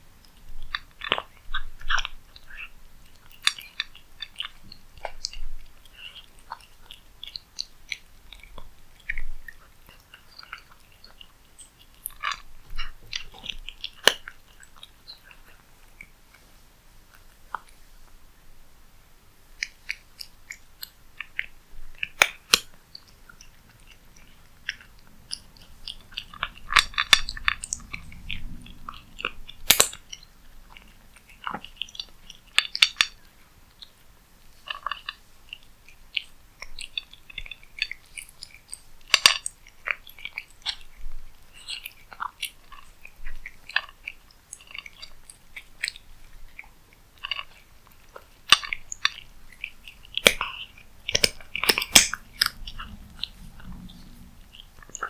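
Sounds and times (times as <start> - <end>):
cat chewing food: 19.4 - 55.0.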